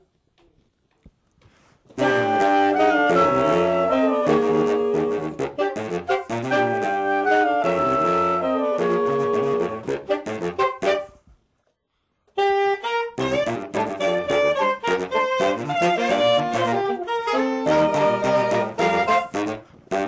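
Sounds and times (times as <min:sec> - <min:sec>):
saxophone quartet playing jazz: 0:01.9 - 0:11.2, 0:12.4 - 0:20.0.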